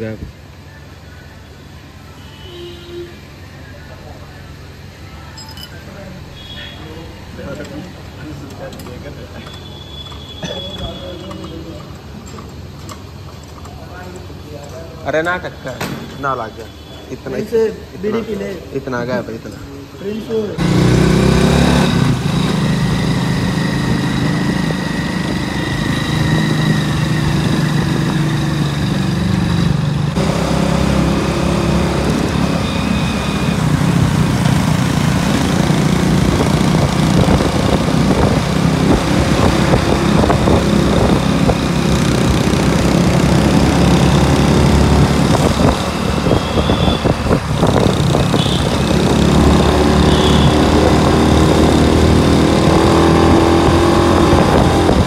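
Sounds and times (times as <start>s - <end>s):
motorcycle engine running: 20.6s - 55.0s.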